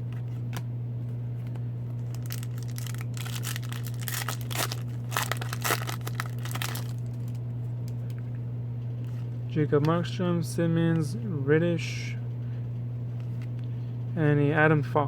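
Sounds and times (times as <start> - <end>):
low hum: 0.0 - 15.0
foil wrapper tearing and crinkling: 2.0 - 7.4.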